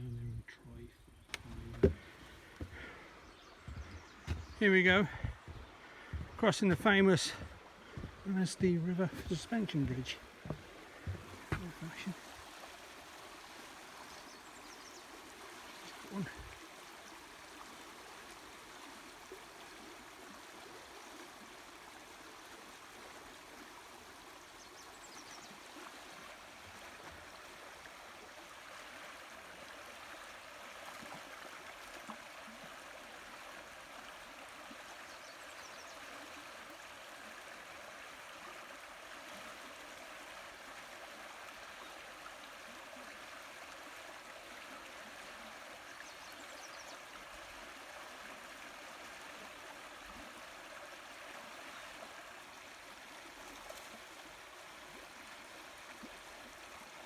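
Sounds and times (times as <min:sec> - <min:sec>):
river water rushing: 0:01.8 - 0:24.0.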